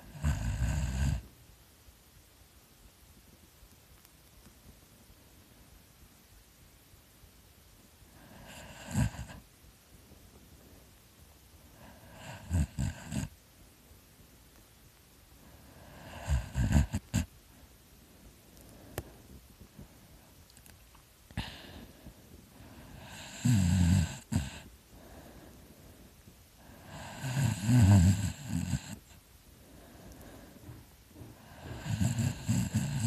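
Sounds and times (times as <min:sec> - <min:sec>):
person snoring heavily: 0:00.0 - 0:01.2, 0:08.2 - 0:09.4, 0:12.0 - 0:13.3, 0:15.8 - 0:17.3, 0:22.8 - 0:24.7, 0:26.6 - 0:29.1, 0:31.4 - 0:33.0
quiet breathing: 0:07.7 - 0:14.4, 0:15.2 - 0:33.0.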